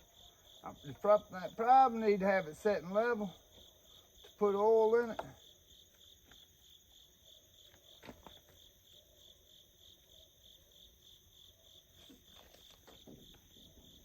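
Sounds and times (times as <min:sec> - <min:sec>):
crickets chirping: 0:00.0 - 0:14.0.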